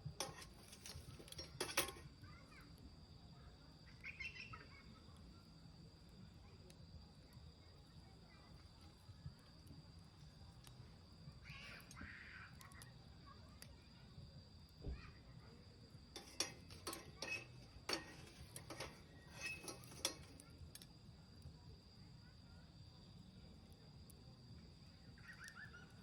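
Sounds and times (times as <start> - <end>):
wood fire crackling: 0.0 - 2.9, 5.9 - 13.9, 15.8 - 21.8.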